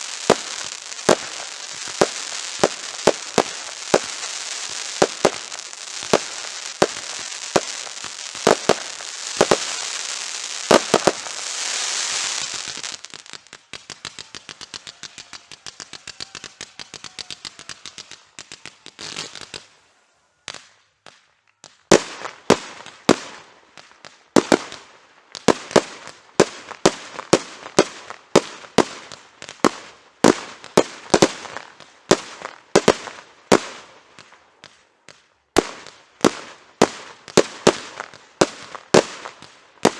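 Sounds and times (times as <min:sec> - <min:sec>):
sharp firework bangs: 0:00.0 - 0:12.8
fireworks bursting with bangs: 0:00.0 - 0:19.8, 0:20.5 - 0:39.9
fireworks crackling: 0:00.0 - 0:39.9
small crackling pops: 0:34.2 - 0:35.3.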